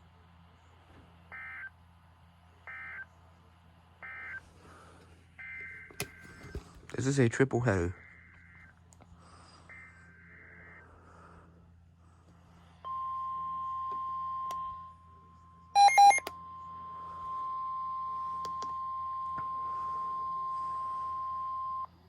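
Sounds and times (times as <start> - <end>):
steady warning alarm tone: 4.0 - 4.8, 7.6 - 11.5, 15.8 - 21.9
loud short beeps: 15.8 - 16.3.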